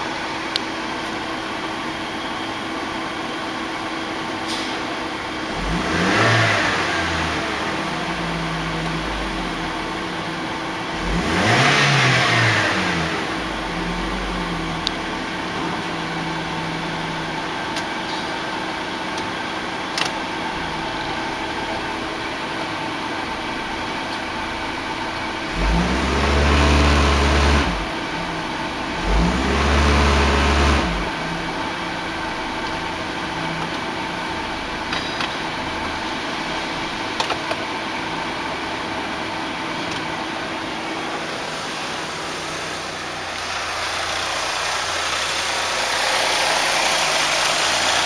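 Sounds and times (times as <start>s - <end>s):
car engine idling and revving: 0.0s - 48.0s.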